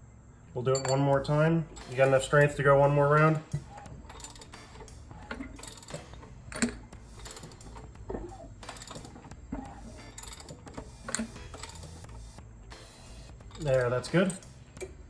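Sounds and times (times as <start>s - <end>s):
ratchet wrench clicking: 3.3s - 7.9s, 9.8s - 12.1s.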